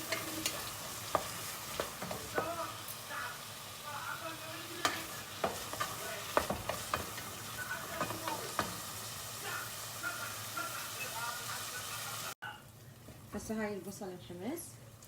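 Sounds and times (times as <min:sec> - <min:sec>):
utensil scraping a pan: 0:00.0 - 0:02.7, 0:04.6 - 0:09.2
onions sizzling in oil: 0:00.0 - 0:15.0.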